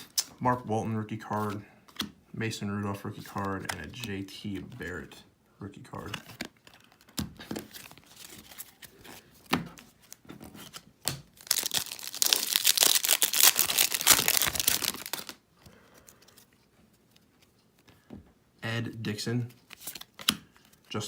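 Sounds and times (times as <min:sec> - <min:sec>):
wrapper tearing and crinkling: 0:11.3 - 0:15.4.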